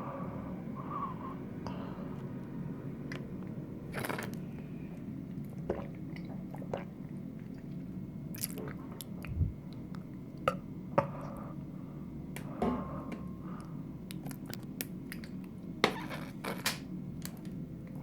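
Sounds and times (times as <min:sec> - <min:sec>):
person swallowing water: 0:05.6 - 0:07.1, 0:08.4 - 0:09.8.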